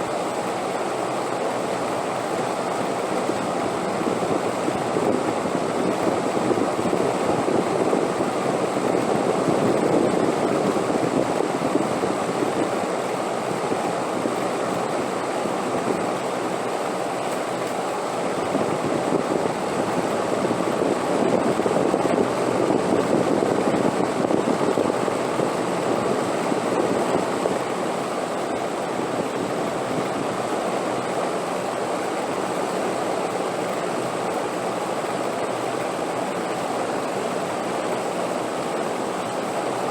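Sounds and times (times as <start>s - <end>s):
wind blowing in gusts: 3.7s - 16.2s, 18.2s - 30.7s.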